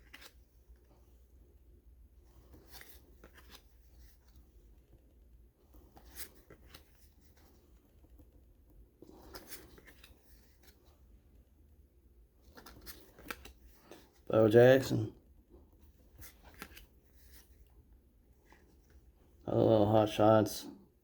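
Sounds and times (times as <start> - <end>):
cards scraping: 0.0 - 0.9, 2.2 - 5.0, 5.7 - 8.3, 9.0 - 10.9, 12.4 - 14.3, 16.0 - 17.7
paper cards rustling and clicking: 0.0 - 1.2, 2.2 - 11.2, 12.3 - 14.3, 15.6 - 17.8.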